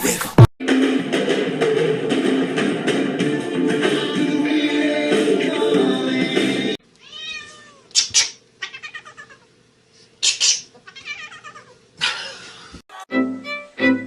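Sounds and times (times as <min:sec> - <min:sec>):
cat meowing and yowling: 0:07.0 - 0:07.9, 0:08.6 - 0:09.4, 0:10.9 - 0:11.8.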